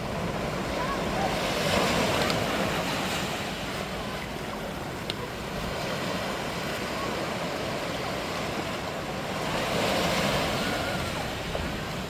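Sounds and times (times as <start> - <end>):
sea waves breaking: 0.0 - 12.0
wind buffeting microphone: 9.5 - 12.0.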